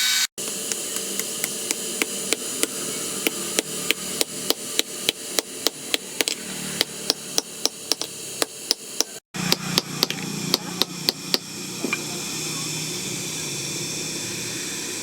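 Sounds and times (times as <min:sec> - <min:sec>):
hammer striking hot steel on anvil: 0:00.4 - 0:11.5.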